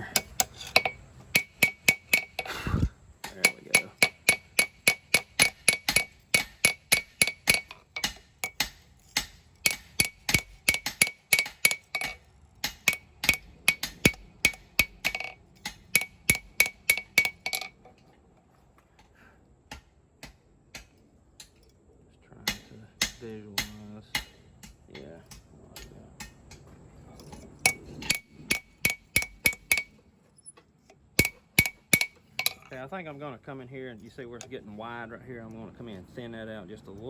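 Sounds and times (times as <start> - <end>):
hammer striking steel on anvil: 0.0 - 2.6, 3.2 - 17.7, 22.4 - 26.6, 27.2 - 30.0, 31.2 - 32.8.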